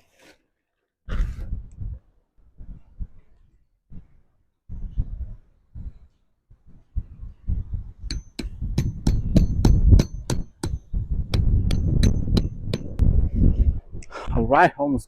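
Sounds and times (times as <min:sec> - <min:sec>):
tent stakes being hammered: 0:08.1 - 0:13.1.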